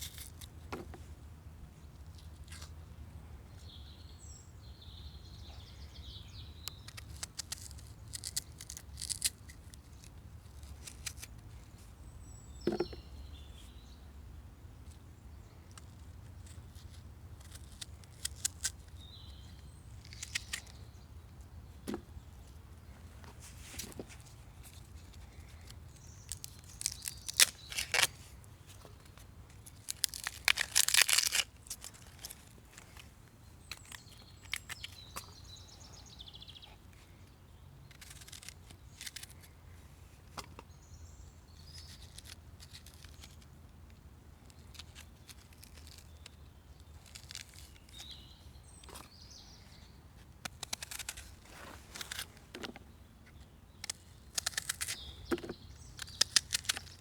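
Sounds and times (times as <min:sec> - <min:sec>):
bird chirping: 0:01.6 - 0:09.3, 0:10.6 - 0:14.2, 0:14.8 - 0:22.6, 0:33.4 - 0:39.4, 0:44.5 - 0:50.0, 0:50.6 - 0:57.0
crackling and rustling: 0:21.8 - 0:35.3, 0:50.2 - 0:57.0.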